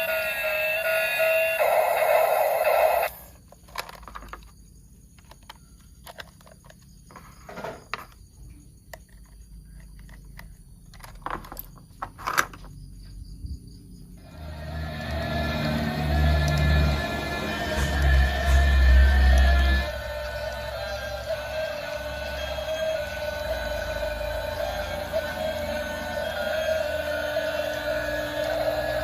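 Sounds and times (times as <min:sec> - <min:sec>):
plastic toy parts clicking: 0:03.5 - 0:07.0, 0:08.9 - 0:12.6.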